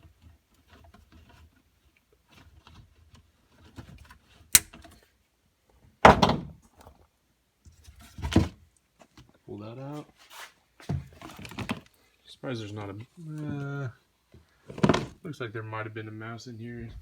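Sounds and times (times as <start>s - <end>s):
sharp click: 4.6s - 4.8s.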